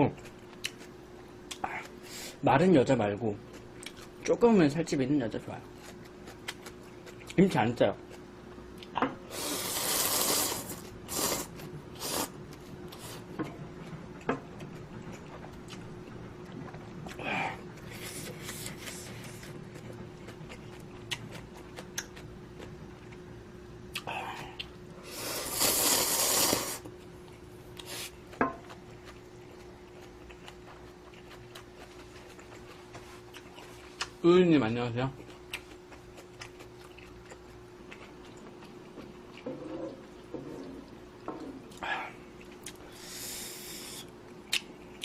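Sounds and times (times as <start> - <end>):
person slurping noodles: 9.3 - 12.3, 25.1 - 26.9.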